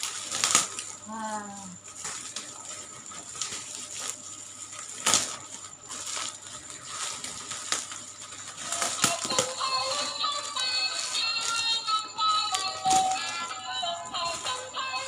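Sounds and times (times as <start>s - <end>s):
plastic toy packaging rustles: 0.0s - 1.1s, 1.8s - 15.0s
beeping electronic toy tune: 9.2s - 15.0s.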